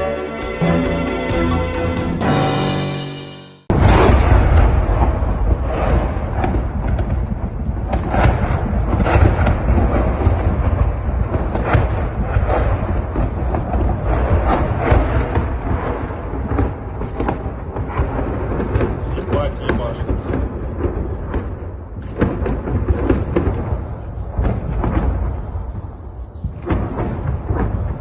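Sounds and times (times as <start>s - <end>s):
shelling explosions: 0.0s - 28.0s
sharp booms and cracks: 3.6s - 28.0s.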